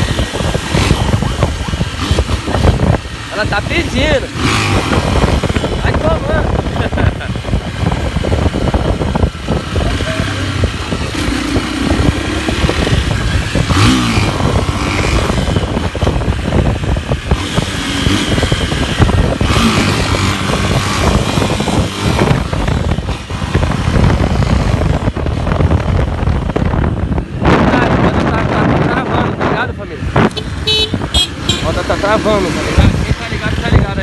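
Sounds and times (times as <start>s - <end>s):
motorcycle engine revving: 0.0s - 34.0s
wind noise on microphone: 0.0s - 34.0s.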